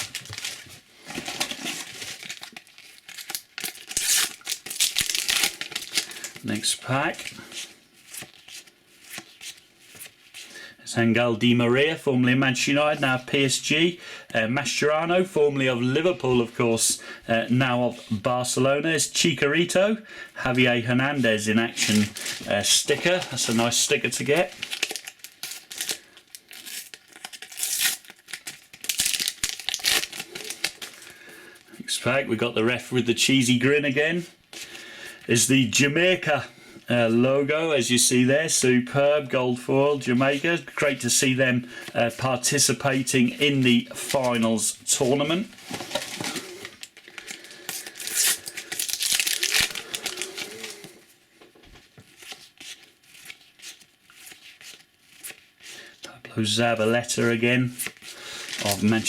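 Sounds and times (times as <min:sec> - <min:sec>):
packet wrapper tearing and crinkling: 0:00.0 - 0:06.5, 0:21.8 - 0:31.1, 0:45.9 - 0:50.9, 0:58.3 - 0:59.0.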